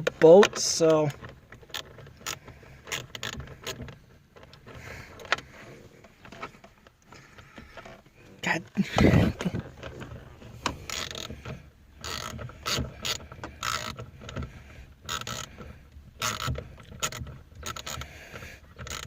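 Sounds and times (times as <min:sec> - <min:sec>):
ratchet wrench clicking: 0:10.8 - 0:11.3, 0:12.0 - 0:14.0, 0:15.1 - 0:15.6, 0:16.2 - 0:19.0.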